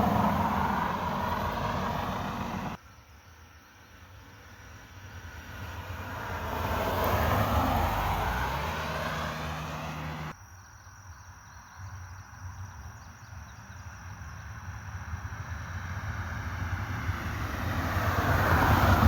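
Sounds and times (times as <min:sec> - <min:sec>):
vehicle passing on road: 0:00.0 - 0:02.8, 0:04.2 - 0:10.4, 0:14.6 - 0:19.0.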